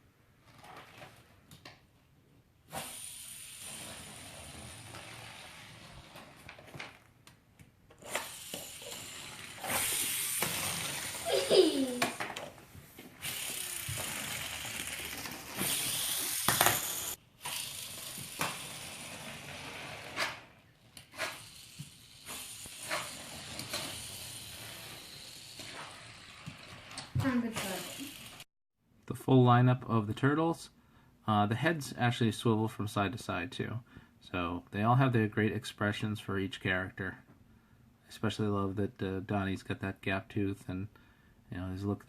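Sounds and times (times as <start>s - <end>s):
toy friction motors whirring: 2.7s - 6.5s, 8.0s - 12.5s, 13.2s - 28.5s
person exclaiming: 11.2s - 12.1s.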